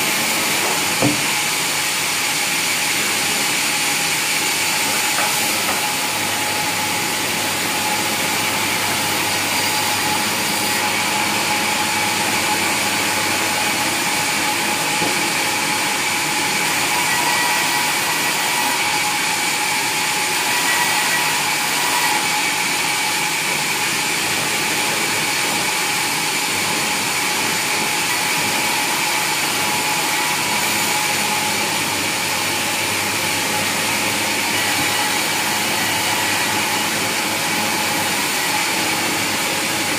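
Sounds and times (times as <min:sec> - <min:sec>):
sawmill machinery whining: 0:00.0 - 0:39.9.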